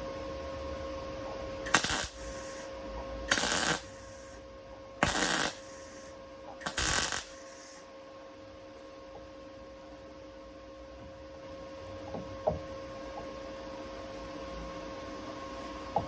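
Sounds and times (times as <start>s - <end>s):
welder steady hum: 0.0s - 16.0s
welder crackling: 1.7s - 2.7s, 3.3s - 4.4s, 5.0s - 7.8s.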